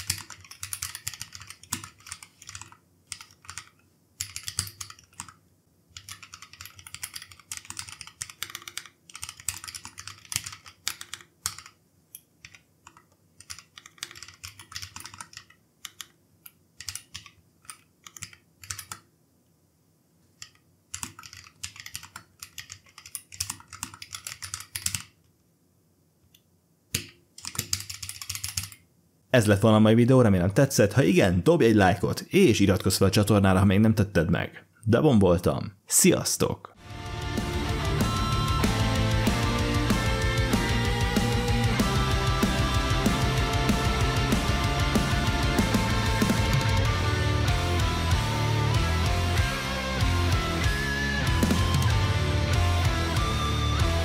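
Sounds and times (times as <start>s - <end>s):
mechanical keyboard typing: 0.0s - 11.8s, 12.4s - 16.2s, 16.8s - 19.1s, 20.4s - 25.2s, 26.9s - 28.8s, 37.9s - 47.6s.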